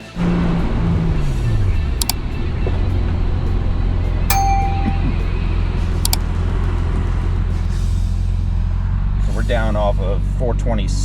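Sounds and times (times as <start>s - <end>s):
short ringing chime: 4.3s - 5.3s.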